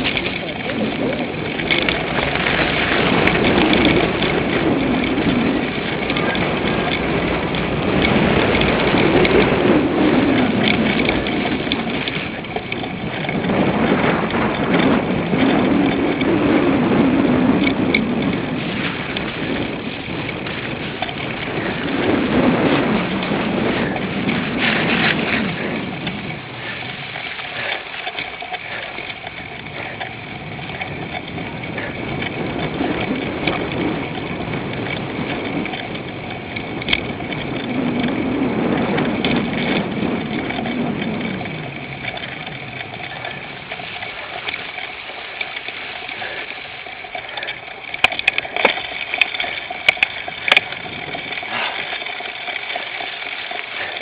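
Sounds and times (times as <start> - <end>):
bike tyre rumble: 0.0 - 54.0
chain and frame rattle: 0.0 - 54.0
wind rushing over microphone: 0.0 - 54.0
sharp clicks: 39.0 - 54.0.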